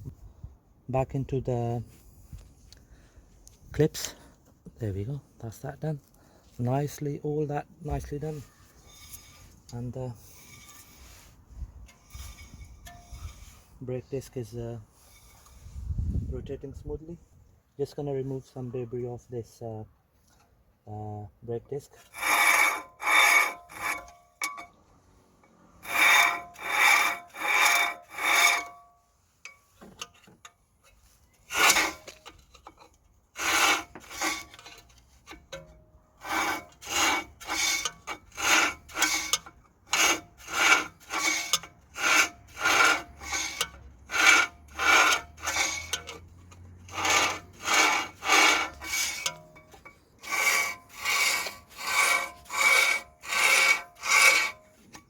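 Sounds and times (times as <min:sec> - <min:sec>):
scrubbing brake disc: 0:08.3 - 0:13.8, 0:29.5 - 0:55.0.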